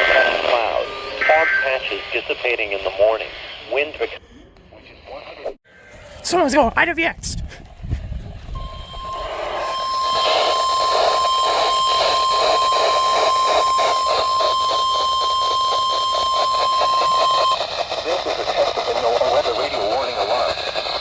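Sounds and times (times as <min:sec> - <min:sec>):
steady alarm tone: 0:00.0 - 0:02.6, 0:08.6 - 0:21.0
radio static: 0:00.0 - 0:04.2, 0:08.9 - 0:21.0.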